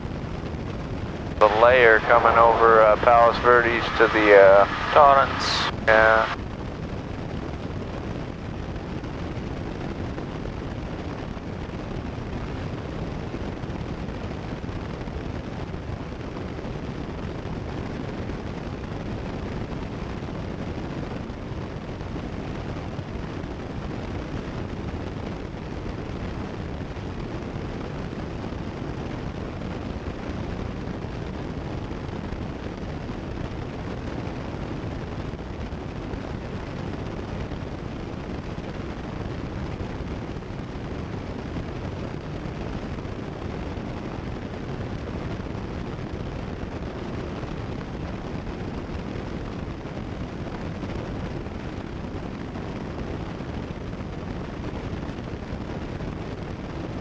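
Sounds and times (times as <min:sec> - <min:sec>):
airplane engine and propeller drone: 0:01.4 - 0:06.4.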